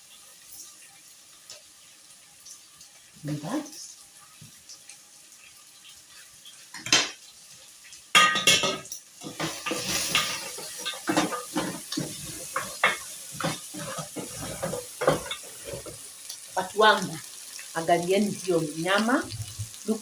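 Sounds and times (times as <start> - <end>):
food sizzling: 0.0 - 20.0
spoon scraping pot: 9.2 - 16.0.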